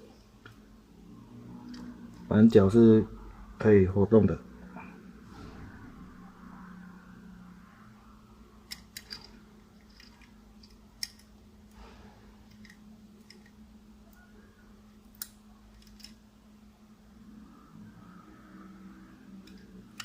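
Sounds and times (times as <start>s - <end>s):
faint steady hum: 0.0s - 20.0s
model parts clicking: 8.7s - 11.3s, 15.1s - 16.2s.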